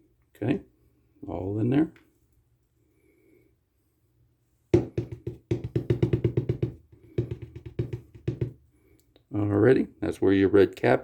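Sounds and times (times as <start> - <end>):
rapid hollow knocks: 4.8 - 8.6.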